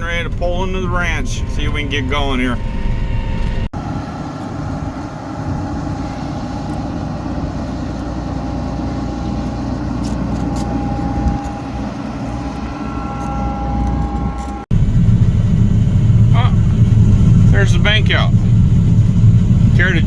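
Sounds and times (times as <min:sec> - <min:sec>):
farm machine engine rumbling: 0:00.0 - 0:20.0.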